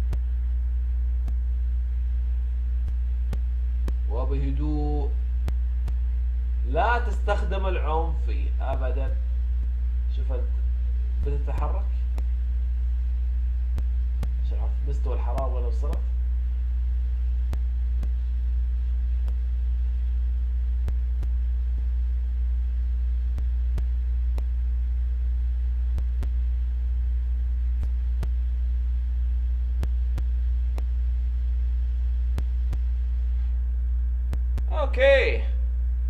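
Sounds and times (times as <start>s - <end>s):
faint clicks: 0.0s - 0.4s, 1.1s - 1.6s, 2.6s - 4.1s, 5.4s - 6.2s, 8.7s - 14.5s, 15.3s - 22.2s, 23.0s - 33.6s
low electrical hum: 0.0s - 36.0s.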